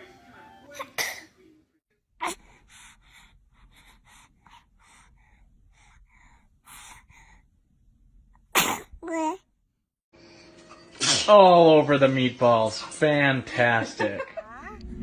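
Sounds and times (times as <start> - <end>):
baby sneezing: 0.8 - 1.3, 2.2 - 2.4, 8.5 - 9.4
baby gasping breaths: 2.2 - 7.5.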